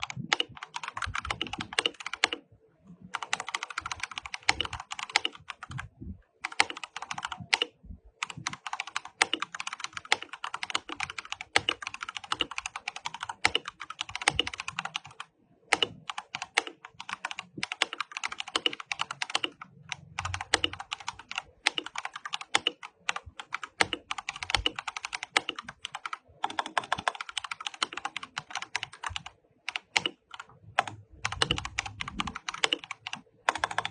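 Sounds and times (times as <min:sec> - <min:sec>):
mechanical keyboard typing: 0:00.0 - 0:02.5, 0:03.1 - 0:33.9.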